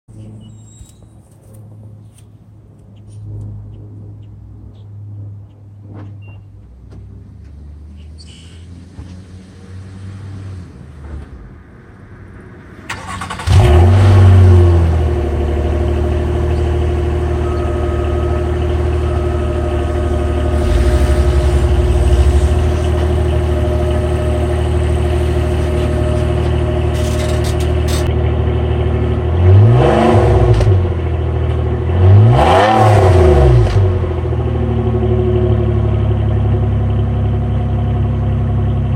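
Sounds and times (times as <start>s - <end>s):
car engine idling: 12.9s - 29.7s, 33.9s - 38.9s
engine revving: 12.9s - 35.7s.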